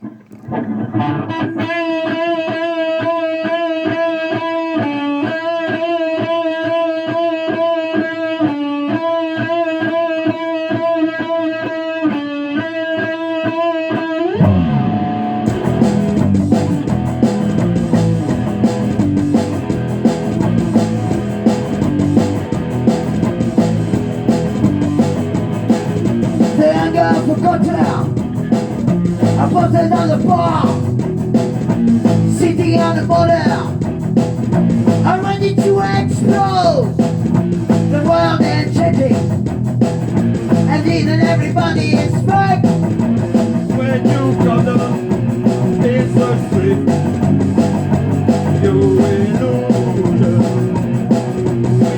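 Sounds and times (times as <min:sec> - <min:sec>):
bass guitar: 0:00.0 - 0:51.9
drums: 0:00.0 - 0:51.9
electric guitar riff: 0:00.0 - 0:51.9.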